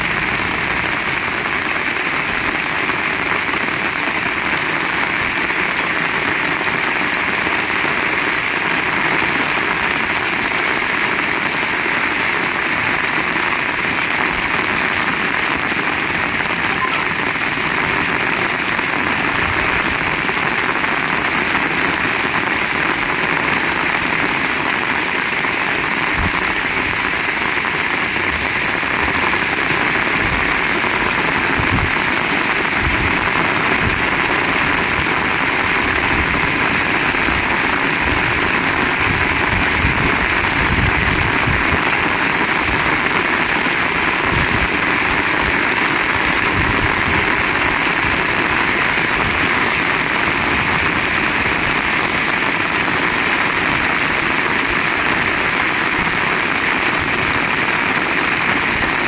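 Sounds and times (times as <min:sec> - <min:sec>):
heavy rain pouring: 0:00.0 - 0:59.0.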